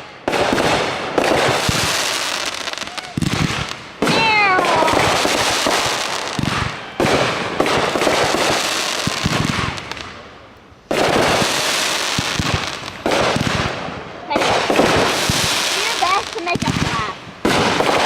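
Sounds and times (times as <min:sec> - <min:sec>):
fireworks crackling volleys: 0:00.0 - 0:18.0.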